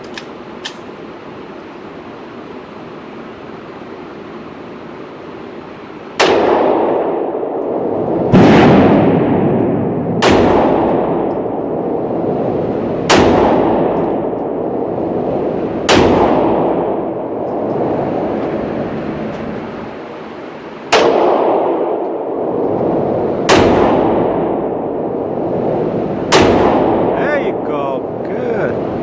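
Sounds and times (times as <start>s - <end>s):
echoing gunshots: 6.2s - 17.7s, 20.8s - 28.2s.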